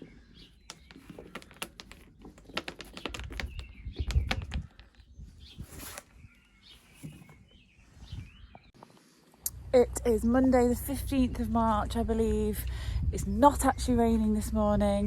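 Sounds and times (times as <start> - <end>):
small bird chirping: 2.9 - 8.8.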